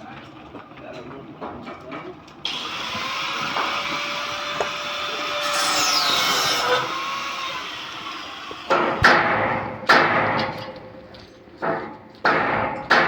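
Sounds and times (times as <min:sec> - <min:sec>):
steady hissing work noise: 0:02.4 - 0:10.2
sharp knocks: 0:08.7 - 0:10.7, 0:11.6 - 0:13.0.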